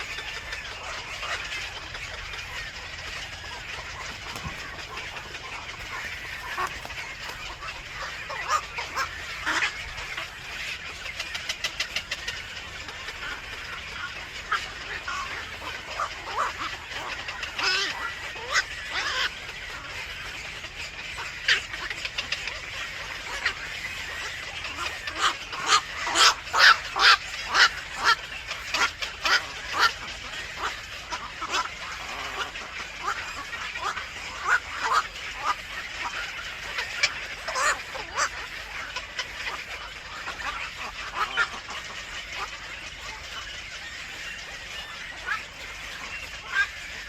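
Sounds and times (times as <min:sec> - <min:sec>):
birds chirping: 0:00.0 - 0:47.0.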